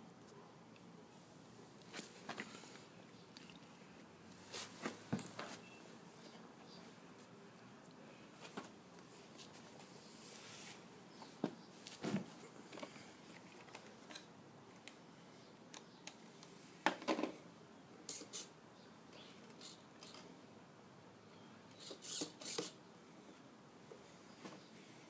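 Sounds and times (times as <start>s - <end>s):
faint room hiss: 0.0s - 25.0s.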